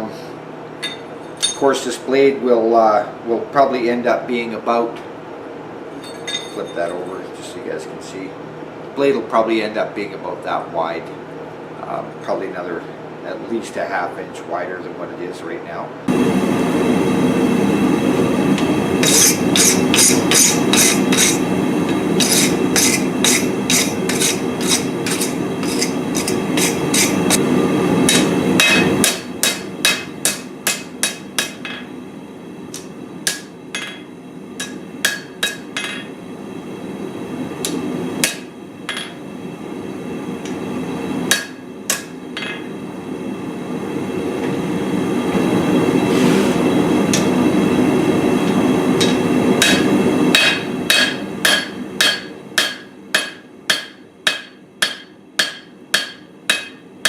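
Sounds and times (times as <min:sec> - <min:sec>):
hammer blows on anvil: 0:28.1 - 0:31.9, 0:32.8 - 0:36.1, 0:49.0 - 0:56.8.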